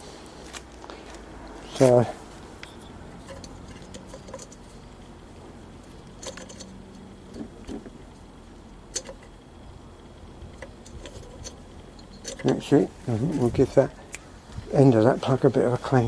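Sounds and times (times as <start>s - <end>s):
metallic clicks of tools handled: 2.6s - 4.9s, 5.9s - 7.9s, 8.9s - 9.4s, 10.5s - 12.7s.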